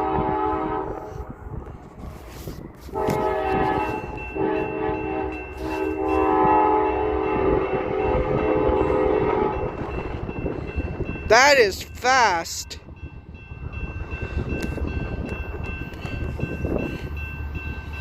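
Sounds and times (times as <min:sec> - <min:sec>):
locomotive air horn chord: 0:00.0 - 0:01.3, 0:02.9 - 0:09.8
train passing rumble: 0:00.0 - 0:18.0.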